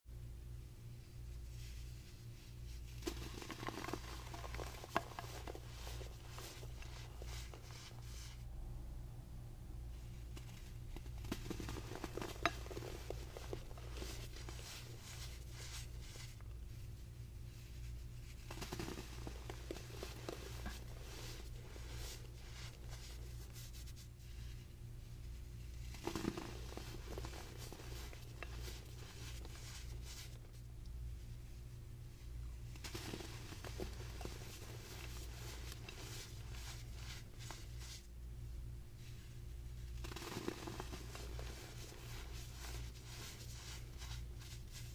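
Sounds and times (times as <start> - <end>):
low steady hum: 0.1 - 44.9
baking soda crumbling crackles: 2.6 - 8.4, 10.2 - 24.2, 25.6 - 31.0, 32.6 - 38.2, 39.4 - 44.9
baking soda crumbling: 3.0 - 7.7, 10.4 - 16.3.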